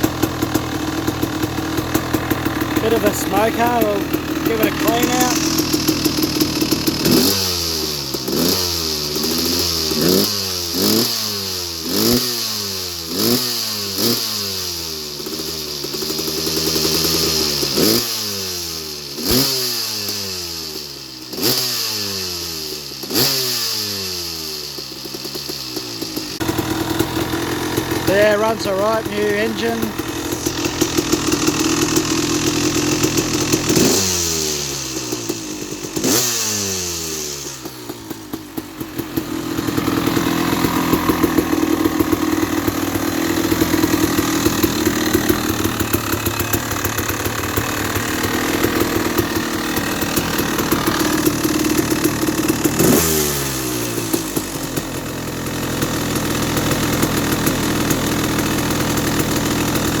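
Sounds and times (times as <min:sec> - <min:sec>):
dirt bike engine idling: 0:00.0 - 1:00.0
person talking: 0:02.8 - 0:05.5, 0:28.1 - 0:30.1.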